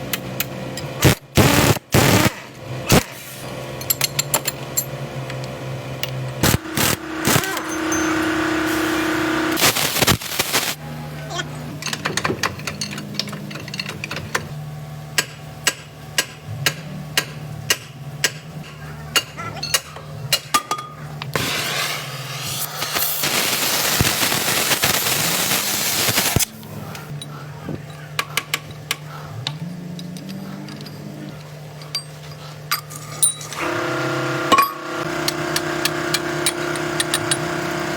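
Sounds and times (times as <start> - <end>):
loud hiss: 8.6 - 10.8, 21.4 - 26.5.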